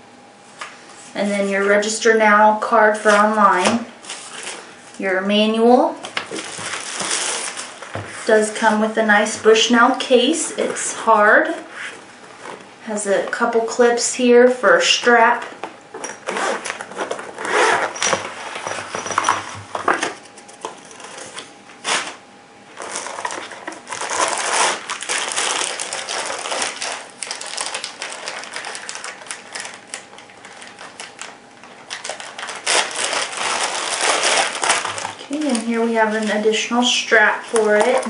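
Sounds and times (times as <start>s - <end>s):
packaging rustling and crinkling: 4.0s - 4.8s, 6.0s - 8.7s, 16.0s - 38.0s.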